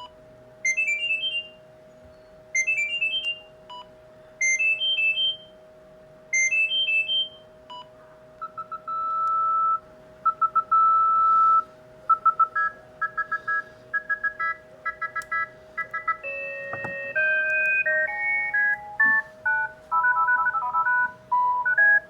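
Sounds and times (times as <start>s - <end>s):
mobile phone beep ringtones: 2.6s - 3.4s, 8.4s - 22.0s.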